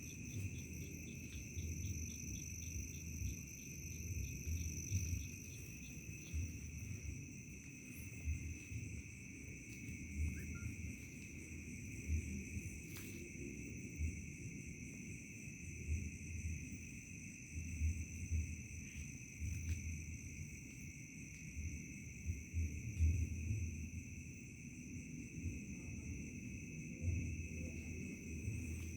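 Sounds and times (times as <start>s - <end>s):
crickets trilling: 0.0s - 28.9s.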